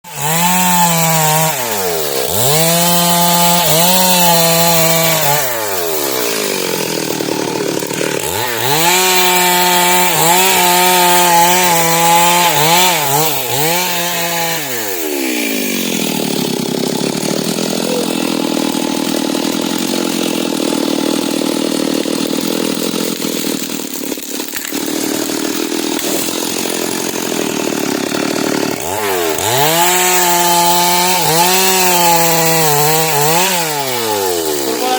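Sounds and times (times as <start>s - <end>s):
chainsaw cutting and revving: 0.0s - 34.9s.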